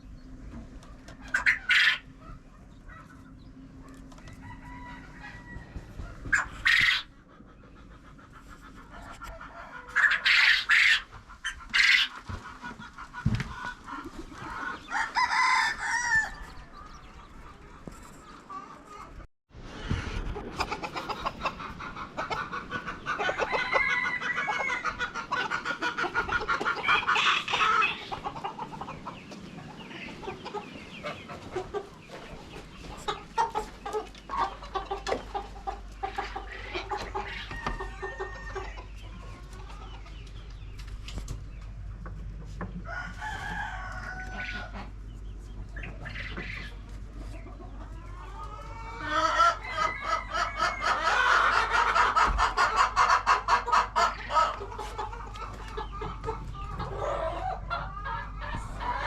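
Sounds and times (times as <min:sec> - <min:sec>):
chickens squawking and clucking: 0:00.0 - 0:59.0
rooster crowing: 0:04.2 - 0:06.2, 0:14.9 - 0:16.7, 0:23.4 - 0:24.8, 0:42.9 - 0:44.7, 0:48.7 - 0:51.3.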